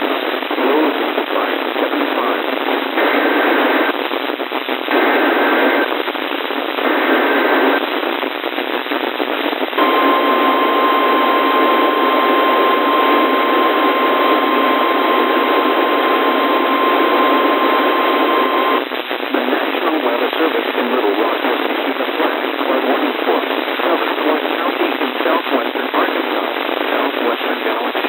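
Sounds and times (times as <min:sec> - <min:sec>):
radio static: 0:00.0 - 0:28.0
alert data bursts: 0:09.8 - 0:18.8
steady attention tone: 0:09.8 - 0:18.8.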